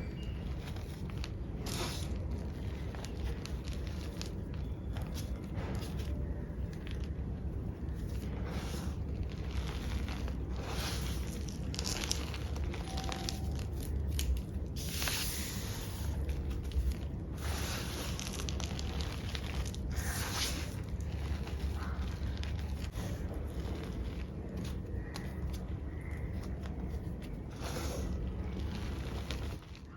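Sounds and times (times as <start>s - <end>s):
chalk crunching and swishing: 0.0s - 29.9s.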